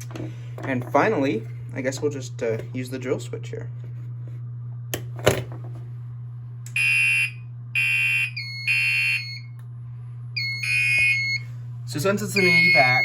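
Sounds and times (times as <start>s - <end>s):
fire alarm horn blasts: 6.8s - 9.5s, 10.4s - 11.5s, 12.2s - 13.0s.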